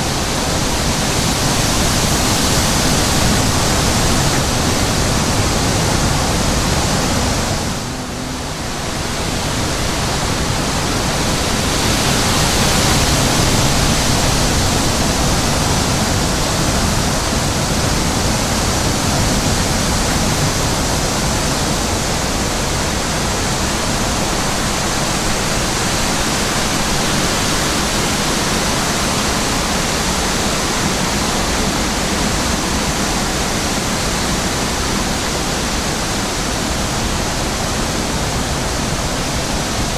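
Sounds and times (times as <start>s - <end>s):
wind blowing: 0.0s - 39.9s.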